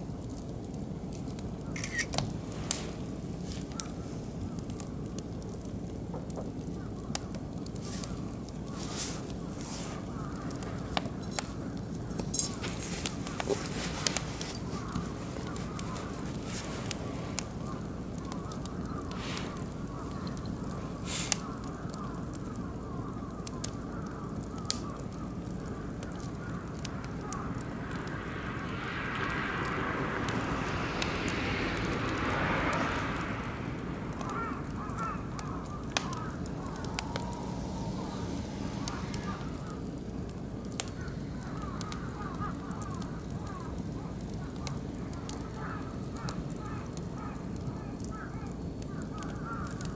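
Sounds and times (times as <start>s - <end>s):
wood fire crackling: 0.0s - 49.9s
rushing hiss: 7.7s - 22.3s, 24.8s - 43.2s.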